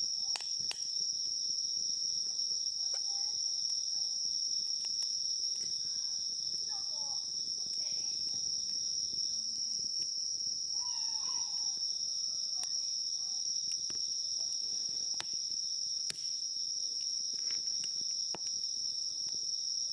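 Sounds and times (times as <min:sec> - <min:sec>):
high-pitched insect chorus: 0:00.0 - 0:19.9.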